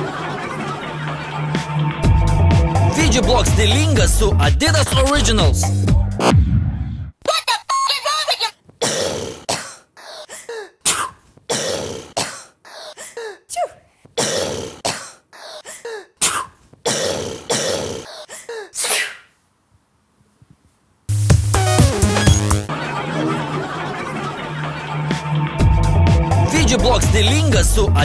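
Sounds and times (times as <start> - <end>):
women coughing: 8.8 - 18.8
women sneezing: 8.8 - 19.3.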